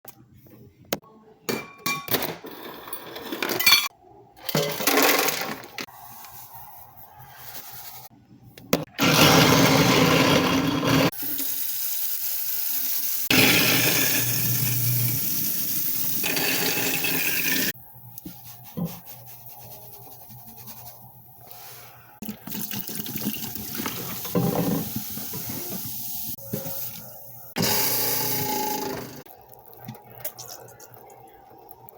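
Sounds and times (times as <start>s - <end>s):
water running into a sink: 22.2s - 26.4s.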